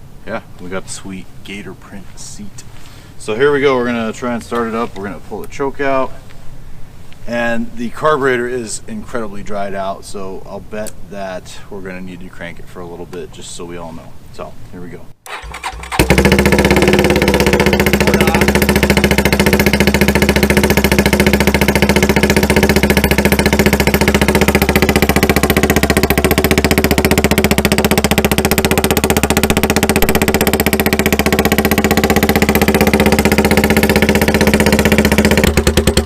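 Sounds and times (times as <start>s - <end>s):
mini bike engine idling: 15.3s - 36.0s.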